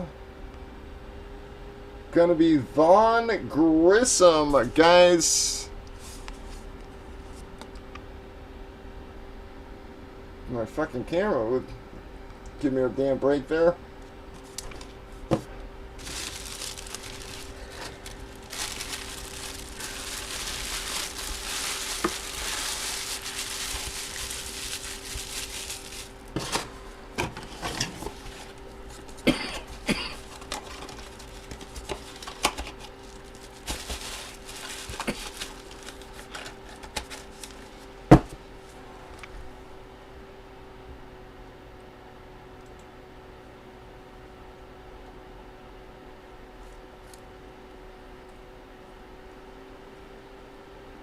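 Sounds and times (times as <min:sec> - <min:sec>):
faint steady hum: 0:00.0 - 0:51.0
plastic wrap rustling and crinkling: 0:16.0 - 0:38.0.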